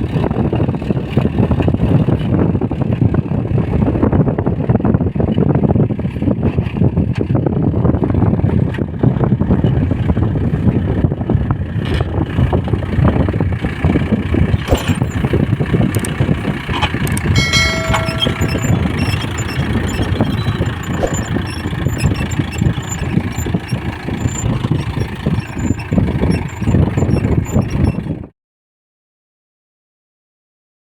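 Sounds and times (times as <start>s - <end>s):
tractor diesel engine under load: 0.0s - 28.3s
plough cutting through hard soil: 13.0s - 28.2s
short high tone: 17.4s - 23.1s.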